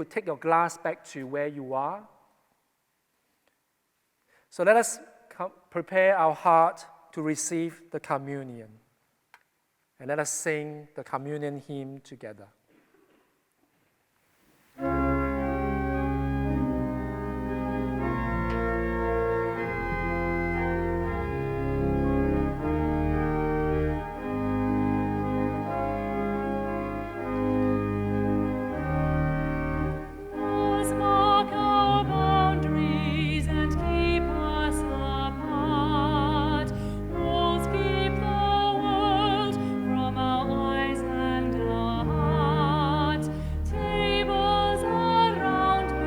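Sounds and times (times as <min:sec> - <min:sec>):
organ playing hymn chords: 0:14.8 - 0:46.0
person singing with vibrato: 0:30.3 - 0:46.0.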